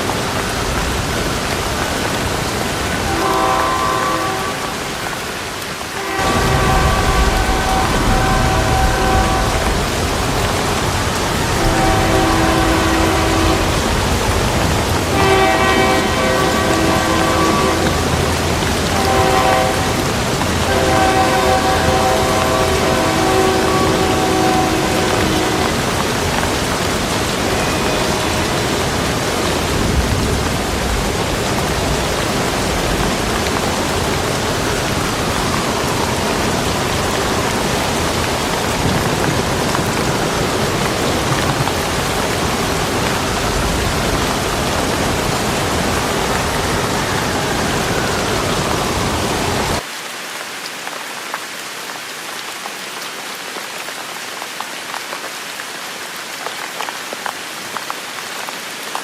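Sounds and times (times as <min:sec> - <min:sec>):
raindrops ticking: 0:00.0 - 0:46.5
steady rain: 0:00.0 - 0:59.0.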